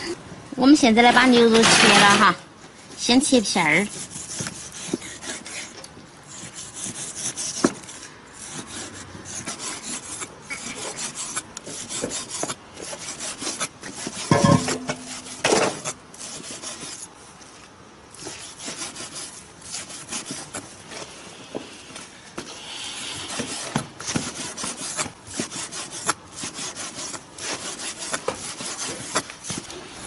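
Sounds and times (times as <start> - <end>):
knife slicing raw meat: 6.4 - 17.1.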